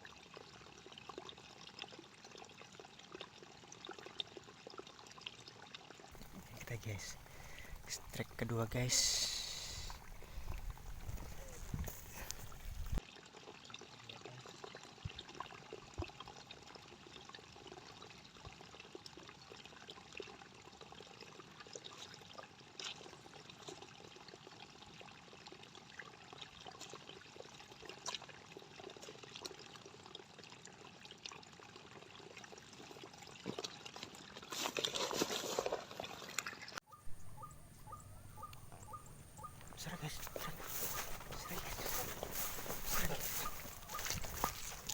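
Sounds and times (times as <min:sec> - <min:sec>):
water splashing and trickling: 0:00.0 - 0:44.9
small clicks and rustles: 0:09.9 - 0:13.0.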